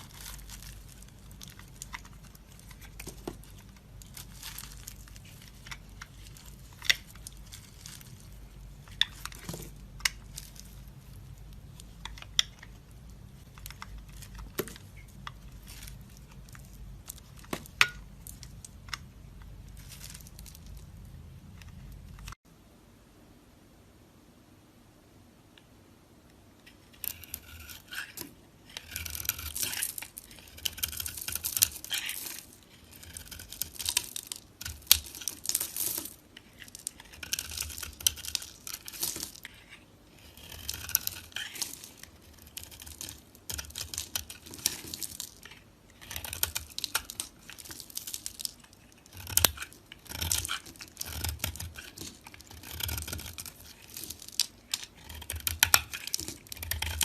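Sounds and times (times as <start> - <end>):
knife cutting through dry soap: 27.0 - 57.0.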